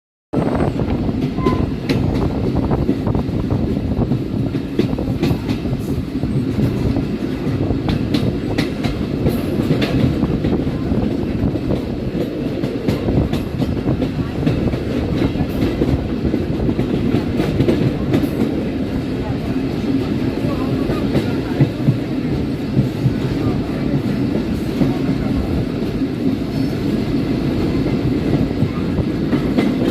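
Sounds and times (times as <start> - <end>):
train rumbling on track: 0.3 - 29.9
wheels clicking over rail joints: 4.1 - 23.3.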